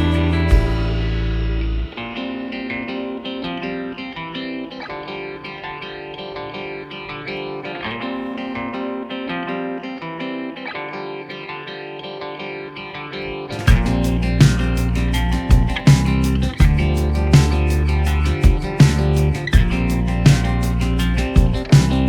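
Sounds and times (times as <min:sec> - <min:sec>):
heavy bass and drum hits: 0:00.0 - 0:01.9, 0:13.7 - 0:22.0
plucked guitar-like music: 0:00.0 - 0:22.0.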